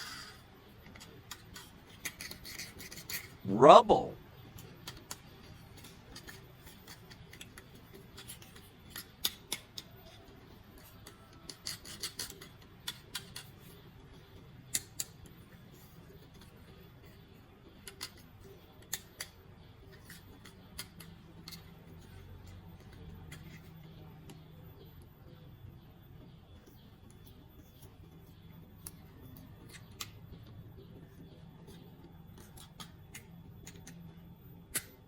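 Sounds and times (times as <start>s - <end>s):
toy packaging clicks and snips: 0.0s - 3.4s, 4.5s - 13.7s, 14.7s - 15.3s, 17.8s - 23.7s, 28.8s - 30.2s, 32.4s - 34.0s.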